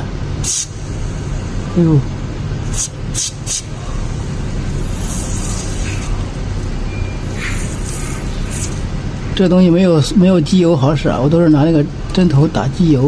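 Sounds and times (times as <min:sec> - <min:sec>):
low hum: 0:00.0 - 0:12.2
aerosol can spraying: 0:00.4 - 0:01.4, 0:02.7 - 0:06.4, 0:07.3 - 0:08.9.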